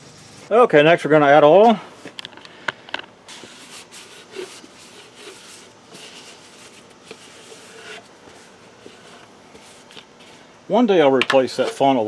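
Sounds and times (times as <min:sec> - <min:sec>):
handling rustling: 0:03.3 - 0:10.5.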